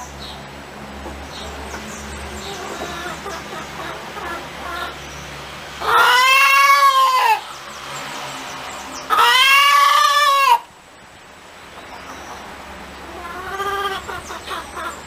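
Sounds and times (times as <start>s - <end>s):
chicken calling: 1.7s - 5.0s, 5.8s - 7.7s, 9.0s - 10.7s, 11.8s - 15.0s.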